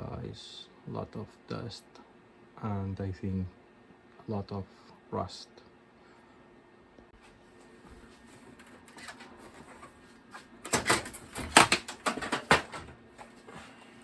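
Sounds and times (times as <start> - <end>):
computer case knocking and clattering: 10.6 - 13.0.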